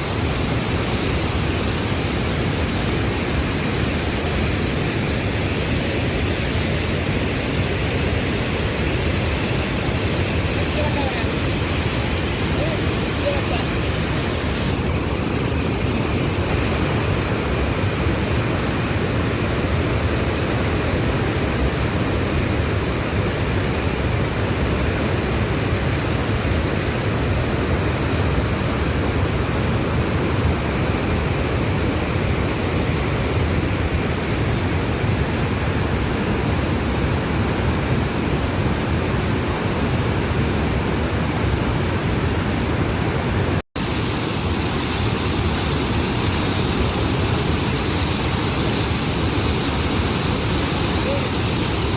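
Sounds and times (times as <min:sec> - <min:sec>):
waterfall rushing: 0:00.0 - 0:14.7, 0:43.8 - 0:51.9.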